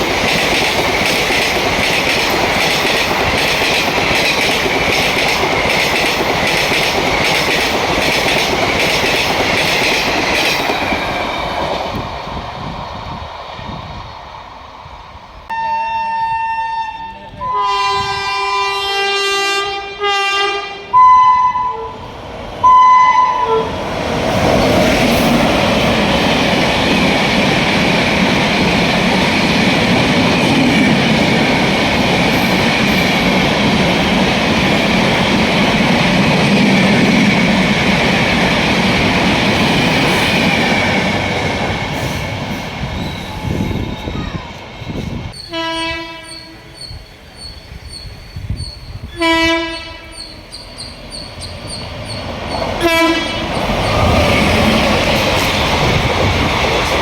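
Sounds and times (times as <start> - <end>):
train clattering over rail joints: 0.0 - 12.2, 50.1 - 57.0
train rumble: 0.0 - 57.0
locomotive horn blasts: 15.5 - 23.8, 45.5 - 46.7, 49.2 - 50.2, 52.8 - 53.5.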